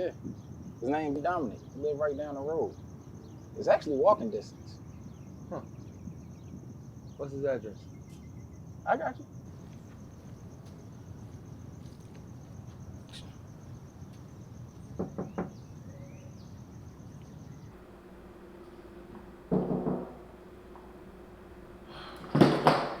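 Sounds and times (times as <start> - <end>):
crickets chirping: 0.0 - 23.0
knocking on a door: 15.0 - 15.6, 17.8 - 21.0, 22.3 - 23.0
loud bang: 17.8 - 23.0.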